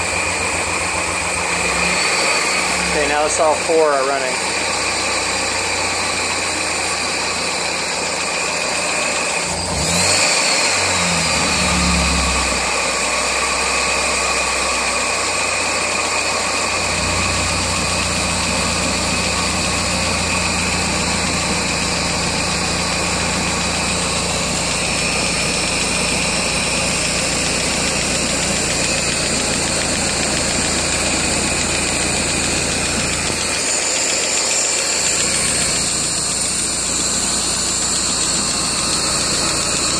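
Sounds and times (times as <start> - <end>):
car engine idling: 0.0 - 39.9
engine tapping tick: 25.7 - 39.9.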